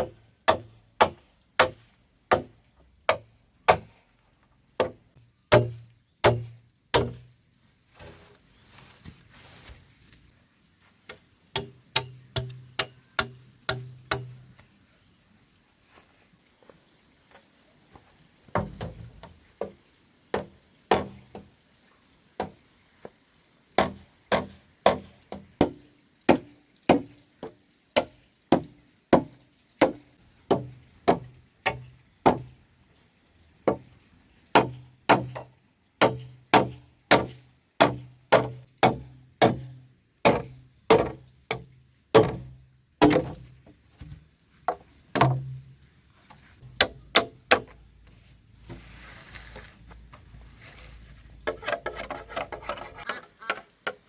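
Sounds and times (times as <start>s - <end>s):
tool striking wood: 4.8s - 7.3s, 11.5s - 14.4s, 34.6s - 45.6s, 46.6s - 47.8s.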